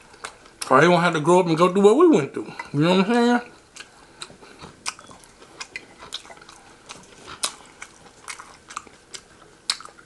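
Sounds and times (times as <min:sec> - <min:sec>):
chewing: 0:00.0 - 0:00.7, 0:03.4 - 0:10.0.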